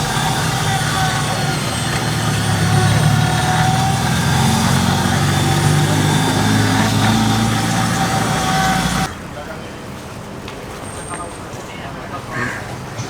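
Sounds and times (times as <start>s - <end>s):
motor humming with whine: 0.0s - 9.1s.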